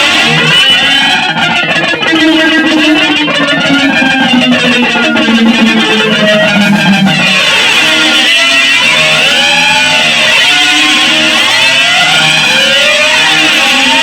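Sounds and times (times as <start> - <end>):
noise music with electric guitar: 0.0 - 14.0.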